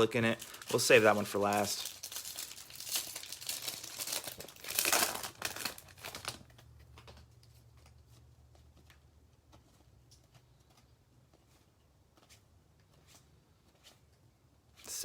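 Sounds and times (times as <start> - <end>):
plastic wrappers crinkling and tearing: 0.0 - 7.6.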